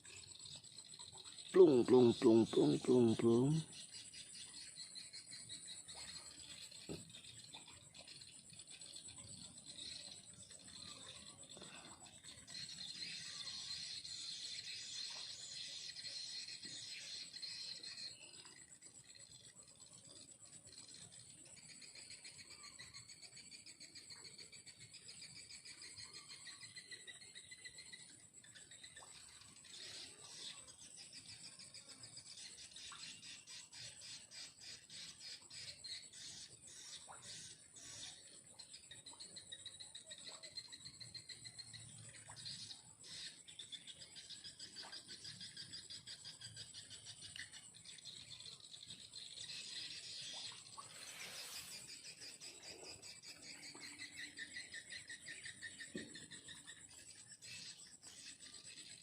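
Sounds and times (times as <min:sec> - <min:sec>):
high-pitched insect whine: 0:00.0 - 0:59.0
insects pulsed chirping: 0:00.0 - 0:59.0.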